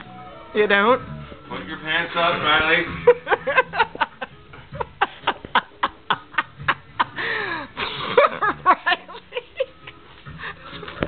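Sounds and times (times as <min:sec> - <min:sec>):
person laughing hard: 0:03.1 - 0:10.6
person gasping: 0:07.2 - 0:08.0.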